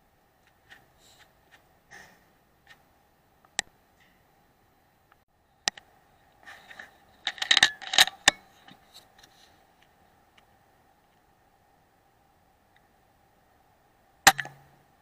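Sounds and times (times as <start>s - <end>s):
metallic rattling and scraping: 6.4s - 9.5s
sharp click: 14.3s - 14.6s.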